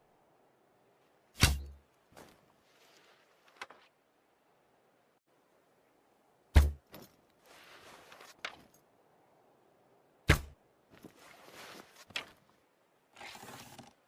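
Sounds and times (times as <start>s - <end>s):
arrow thwack with low thud: 1.4s - 1.8s, 6.6s - 6.8s, 10.3s - 10.6s
soft rustling noise: 2.0s - 4.0s, 6.9s - 8.8s, 10.9s - 13.8s.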